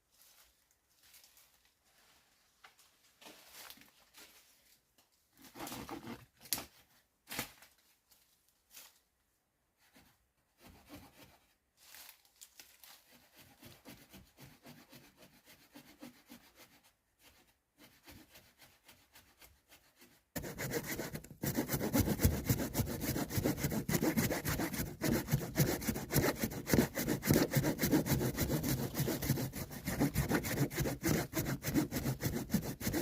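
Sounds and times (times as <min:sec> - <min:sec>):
rasping sawing strokes: 0:10.0 - 0:11.5, 0:13.0 - 0:33.0.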